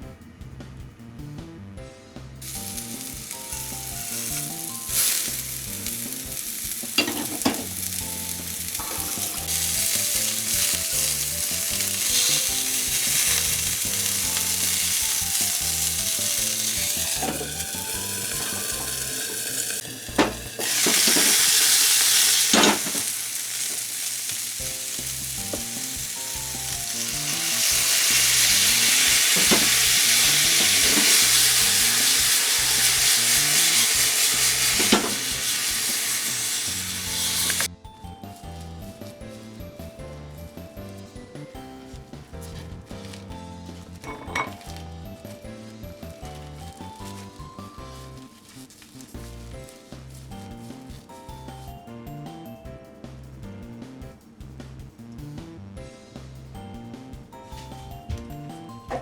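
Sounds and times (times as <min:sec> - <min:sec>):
food sizzling in hot oil: 0:02.4 - 0:37.7.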